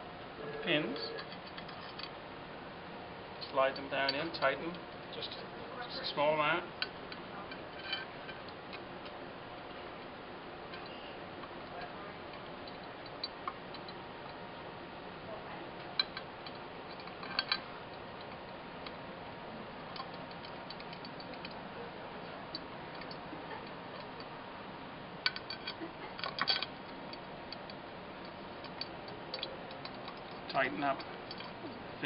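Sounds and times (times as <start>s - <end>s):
steady low hiss: 0.0s - 32.0s
pins clicking against glass: 15.8s - 18.5s, 25.2s - 26.9s, 27.5s - 31.6s.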